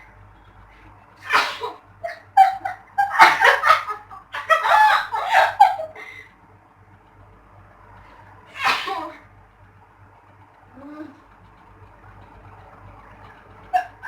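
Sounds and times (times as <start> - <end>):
person sneezing: 1.3 - 1.8, 8.6 - 9.1.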